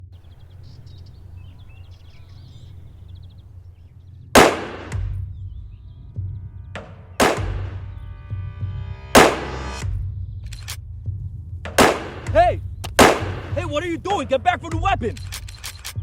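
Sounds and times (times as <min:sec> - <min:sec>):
faint bird chirps: 0:00.0 - 0:04.2
loud gunshots: 0:04.4 - 0:05.1, 0:07.2 - 0:07.8, 0:09.2 - 0:09.8, 0:11.7 - 0:13.6.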